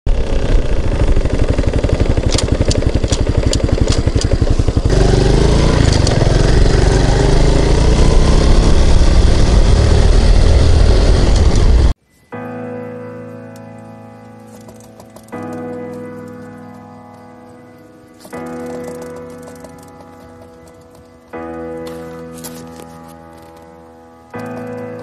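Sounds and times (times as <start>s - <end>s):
motorcycle engine revving: 0.1s - 12.0s
sharp engine ticks: 0.4s - 11.9s
music with held chords: 5.1s - 25.0s.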